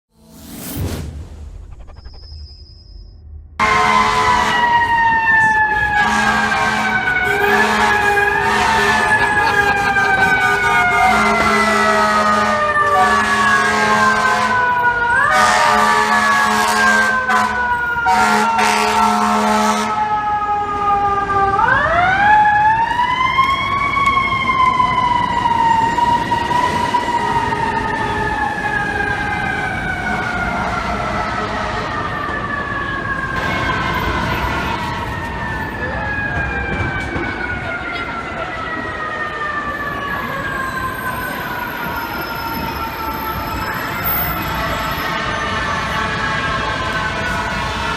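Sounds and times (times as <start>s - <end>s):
air horn blasts: 3.6s - 5.0s, 5.7s - 14.7s, 15.3s - 20.0s
fire truck siren wailing: 3.6s - 47.9s.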